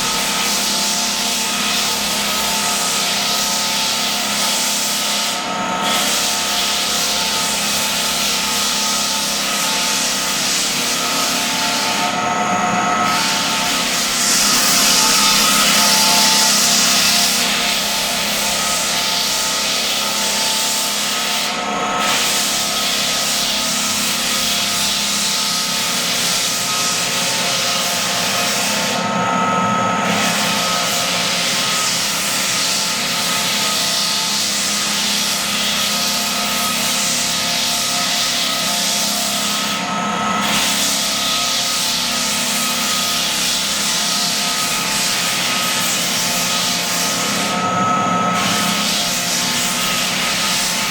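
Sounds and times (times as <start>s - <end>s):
sanding hiss: 0.0s - 12.2s, 13.0s - 29.0s, 30.0s - 47.7s, 48.3s - 50.9s
floor sander motor hum: 0.0s - 50.9s.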